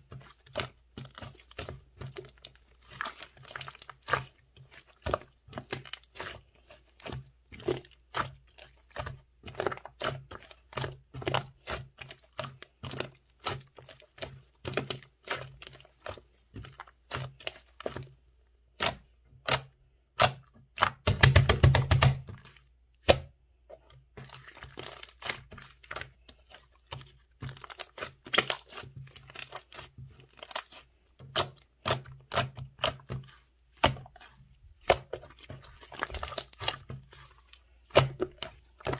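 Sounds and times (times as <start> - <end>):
slime squished by hand: 24.2 - 38.9.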